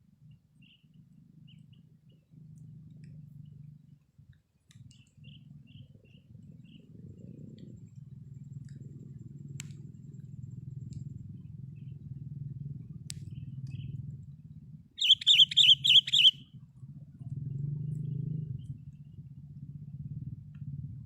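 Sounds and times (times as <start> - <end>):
bird chirping: 15.0 - 16.4.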